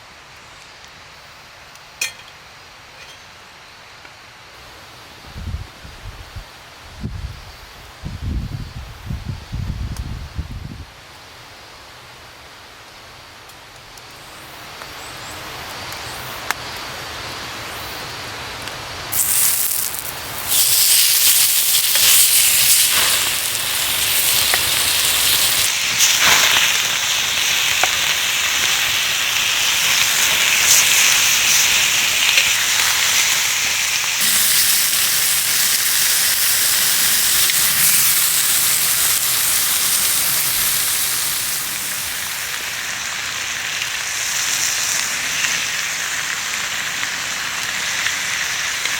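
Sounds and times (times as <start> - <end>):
food sizzling in a frying pan: 19.1 - 48.9.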